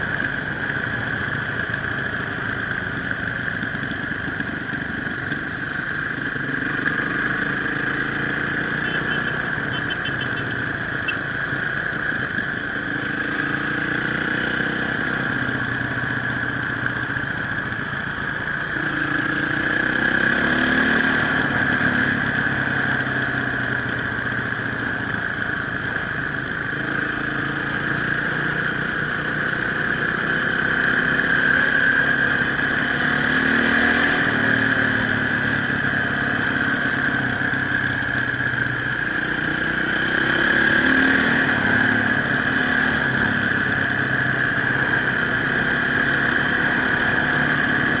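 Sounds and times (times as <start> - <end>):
motorcycle engine revving: 0.0 - 48.0.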